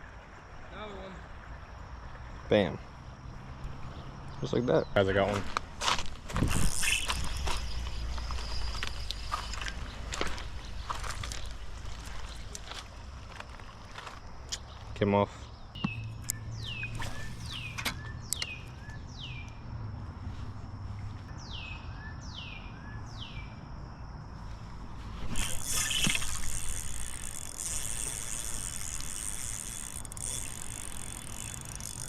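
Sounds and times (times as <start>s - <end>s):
creek water running: 0.0s - 15.2s, 25.0s - 32.0s
bird whistling falling notes: 6.5s - 10.0s, 15.8s - 19.0s.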